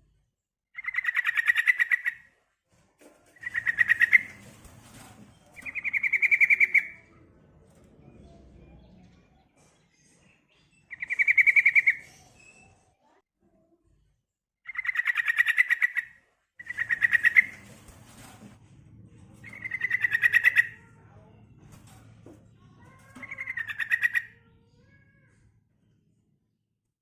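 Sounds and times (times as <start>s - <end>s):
bird chattering trills: 0.8s - 2.2s, 3.4s - 4.4s, 5.6s - 7.0s, 10.9s - 12.0s, 14.7s - 17.6s, 19.5s - 20.8s, 23.2s - 24.3s.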